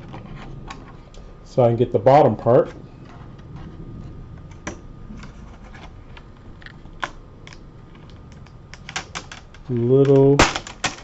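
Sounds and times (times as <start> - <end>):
plastic clips clicking and snapping: 6.6 - 11.0.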